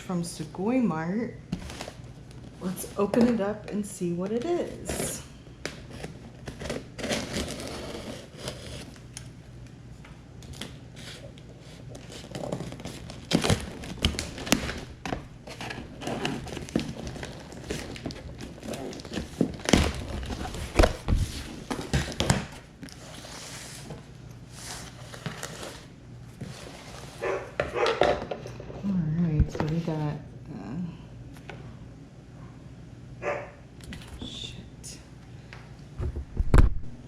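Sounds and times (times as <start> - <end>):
cardboard crinkling and rustling: 5.7 - 9.2, 10.4 - 28.4
packing tape tearing: 5.8 - 9.3, 10.4 - 23.3.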